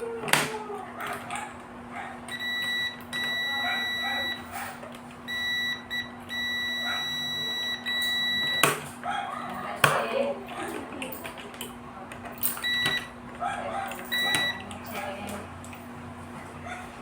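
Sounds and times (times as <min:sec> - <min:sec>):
electronic beeper tone: 0:02.3 - 0:04.5, 0:05.3 - 0:08.8.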